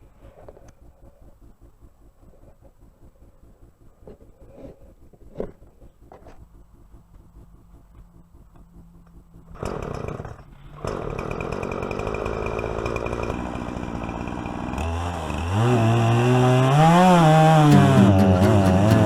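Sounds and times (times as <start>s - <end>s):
chainsaw starting and revving: 9.6s - 19.0s.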